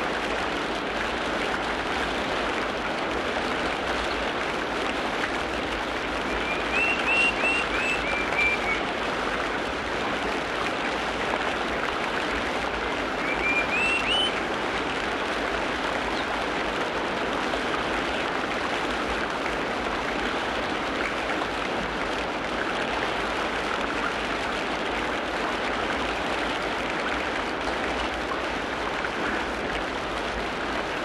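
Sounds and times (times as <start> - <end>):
steady rain falling: 0.0 - 31.0
bird singing whistled notes: 6.4 - 8.8, 13.2 - 14.4.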